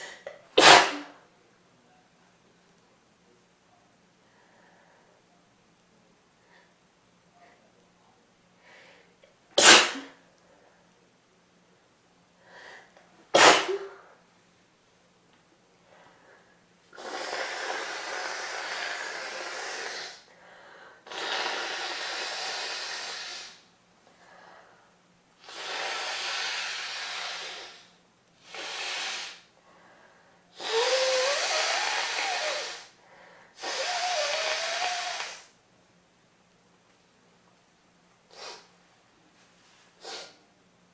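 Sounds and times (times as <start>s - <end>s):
person blowing congested nose: 0.0s - 1.2s, 9.6s - 10.1s, 13.4s - 14.1s, 16.9s - 20.3s, 21.0s - 23.6s, 25.4s - 29.5s, 30.6s - 35.5s, 38.3s - 38.7s, 40.0s - 40.4s
person sniffing: 13.4s - 14.1s, 17.0s - 23.6s, 25.4s - 29.5s, 30.6s - 35.5s, 38.3s - 38.7s, 40.0s - 40.4s
whistling tone through nose: 30.6s - 32.9s, 33.6s - 35.5s.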